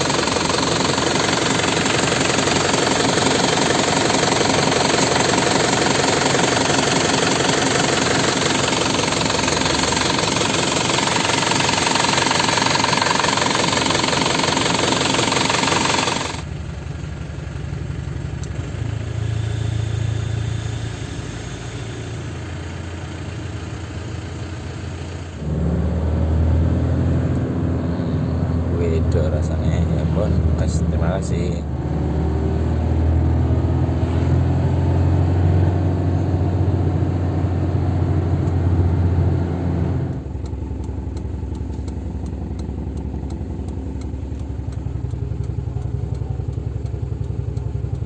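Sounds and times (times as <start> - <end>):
diesel engine clattery knock: 0.0 - 16.6.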